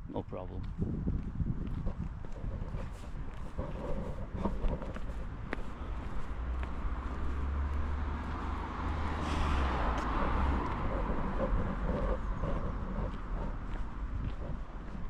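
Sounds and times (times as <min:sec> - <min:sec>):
vehicle driving past: 0:03.6 - 0:15.0.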